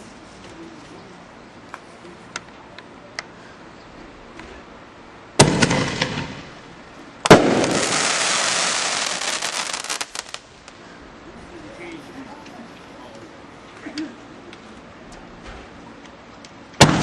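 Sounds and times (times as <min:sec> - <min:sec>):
firework pops: 0:05.4 - 0:06.5, 0:07.2 - 0:08.2, 0:16.8 - 0:17.0
firework bangs: 0:05.4 - 0:10.8, 0:16.8 - 0:17.0
firework crackling: 0:05.4 - 0:10.8, 0:16.8 - 0:17.0.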